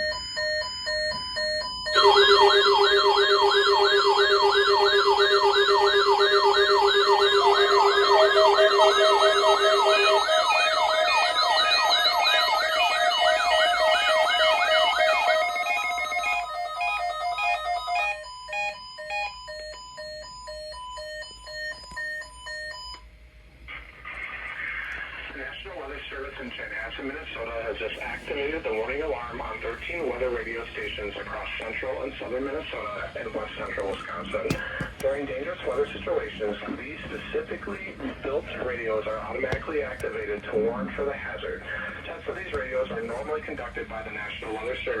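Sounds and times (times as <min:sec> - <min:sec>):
warbling siren-like alarm tone: 0:00.0 - 0:21.8
beeping tones: 0:00.0 - 0:22.7.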